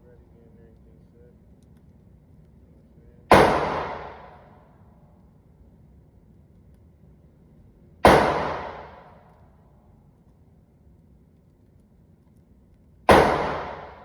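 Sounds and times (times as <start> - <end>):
gunshots echoing: 3.3 - 4.6, 8.0 - 9.2, 13.1 - 14.0.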